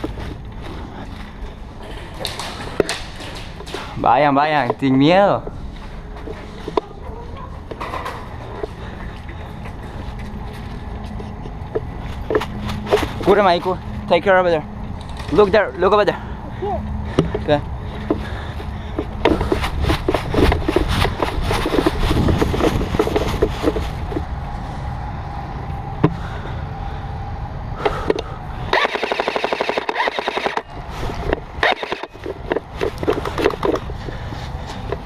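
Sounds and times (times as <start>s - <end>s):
airsoft guns firing: 28.8s - 30.6s.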